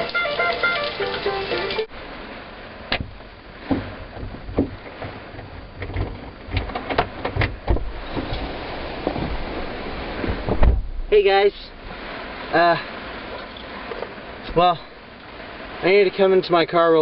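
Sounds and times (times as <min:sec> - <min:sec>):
background music: 0:00.0 - 0:01.9
steady rushing noise: 0:00.0 - 0:17.0
wind gusts buffeting microphone: 0:01.7 - 0:16.9
sharp knocks and clicks: 0:02.9 - 0:08.4.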